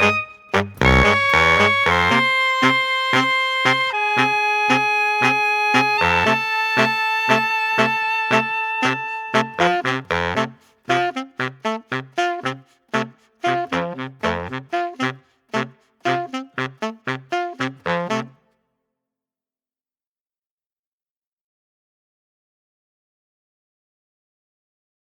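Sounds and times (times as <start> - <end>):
long held horn-like notes: 0.0 - 18.4.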